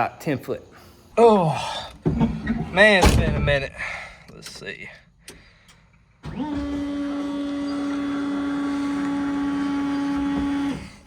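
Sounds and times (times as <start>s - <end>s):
electric motor whine: 6.3s - 11.0s.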